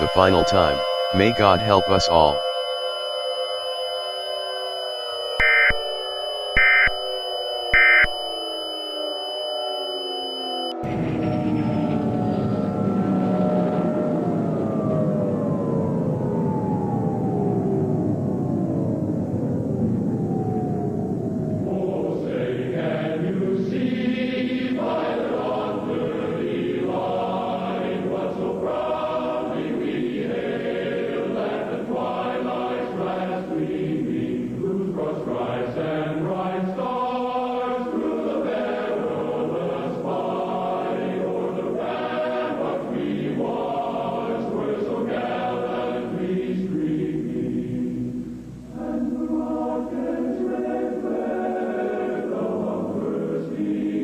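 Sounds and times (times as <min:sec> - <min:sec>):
choir singing an anthem: 0:00.0 - 0:02.6, 0:21.6 - 0:54.0.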